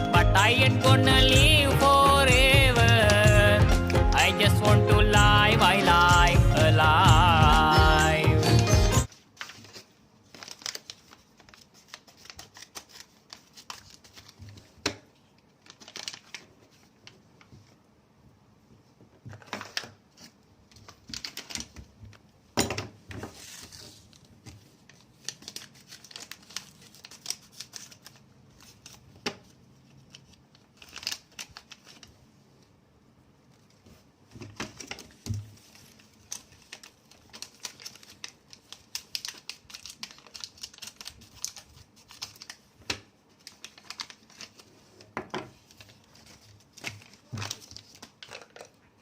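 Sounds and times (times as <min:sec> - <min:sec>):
packaging rustling: 0:09.0 - 0:17.5, 0:19.3 - 0:22.0, 0:23.3 - 0:32.3, 0:33.6 - 0:49.0.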